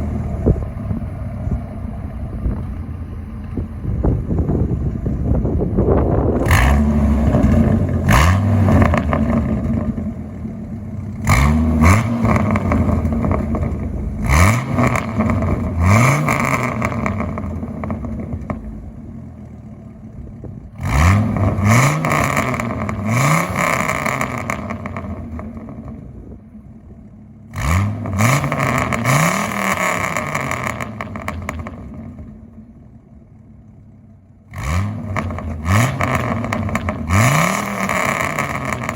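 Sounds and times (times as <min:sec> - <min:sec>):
truck engine revving: 0:00.0 - 0:26.4, 0:27.4 - 0:32.7, 0:34.4 - 0:38.9
exhaust crackles and pops: 0:00.0 - 0:38.9.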